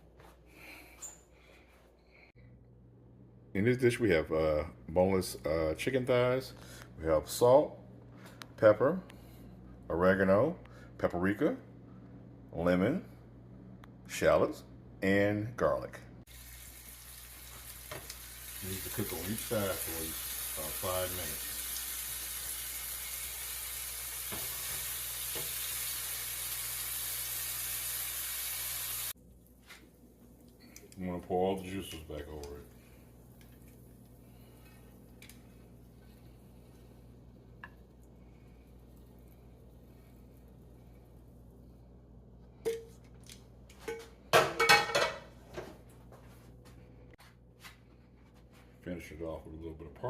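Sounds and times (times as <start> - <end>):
chicken sizzling in a pan: 16.3 - 29.2.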